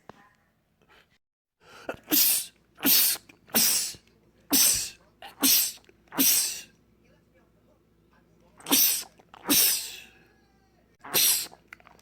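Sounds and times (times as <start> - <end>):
man sneezing: 1.8 - 6.7, 8.6 - 10.1, 11.1 - 11.6.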